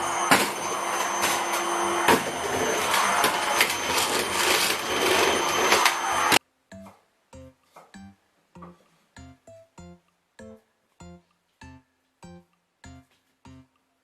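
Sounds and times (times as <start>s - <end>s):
vacuum cleaner whirring: 0.0s - 6.4s.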